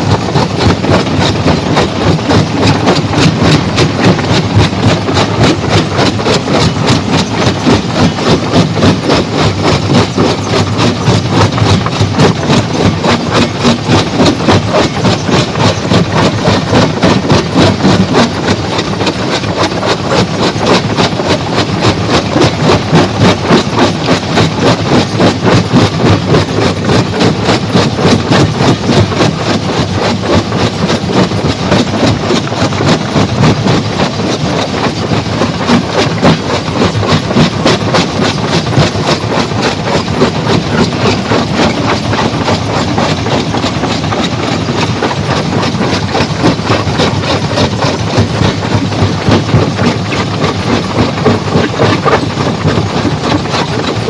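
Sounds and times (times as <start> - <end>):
stone crusher rhythmic clatter: 0.0 - 54.0.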